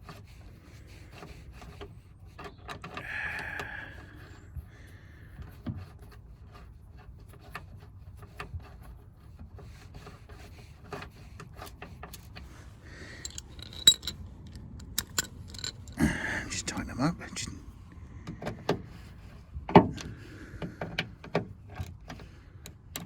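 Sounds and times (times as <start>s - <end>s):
hand tool clicking and scraping metal: 10.8s - 17.5s.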